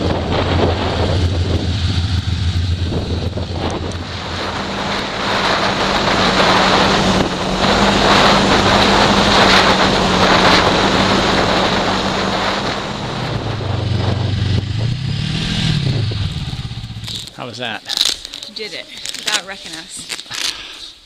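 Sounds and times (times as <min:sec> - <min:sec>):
snowmobile track noise: 0:00.0 - 0:17.7
rushing wind: 0:00.0 - 0:18.1
snowmobile engine running: 0:00.0 - 0:20.0.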